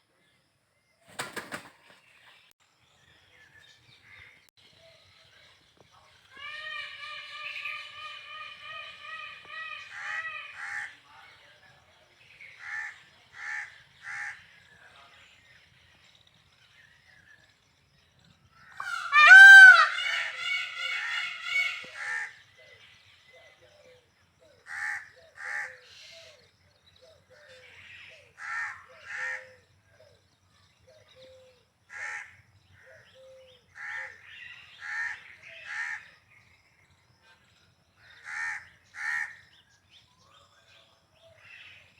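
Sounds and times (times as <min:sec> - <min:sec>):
peacock calling: 0:06.2 - 0:11.0, 0:18.6 - 0:22.8.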